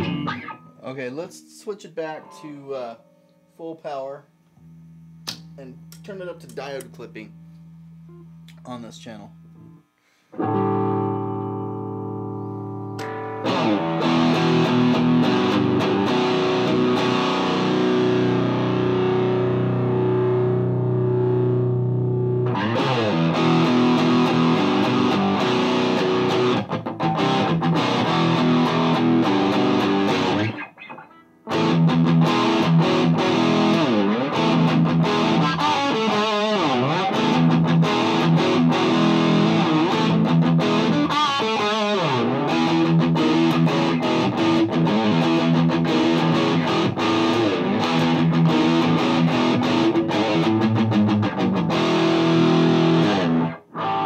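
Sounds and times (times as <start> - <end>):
distorted electric guitar riffing: 0.0 - 3.7, 8.8 - 54.0.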